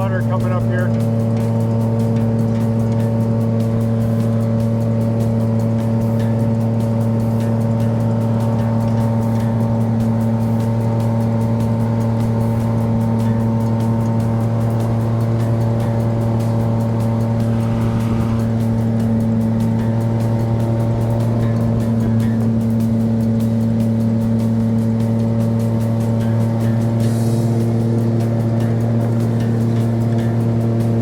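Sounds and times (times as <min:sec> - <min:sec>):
jet boat motor droning: 0:00.0 - 0:31.0.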